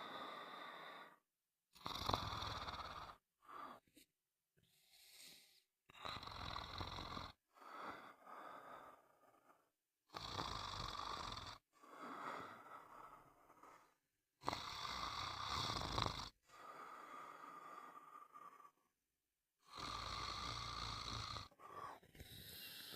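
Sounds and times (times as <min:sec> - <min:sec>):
person snoring: 0:01.8 - 0:03.8, 0:05.1 - 0:18.9, 0:19.6 - 0:22.9
soft airy breath: 0:03.4 - 0:05.7, 0:21.5 - 0:22.9.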